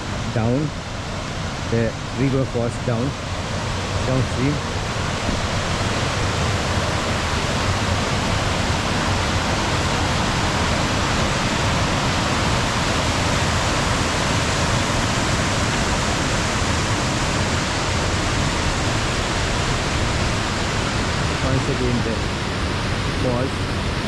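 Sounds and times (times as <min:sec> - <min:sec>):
waterfall rushing: 0:00.0 - 0:24.0.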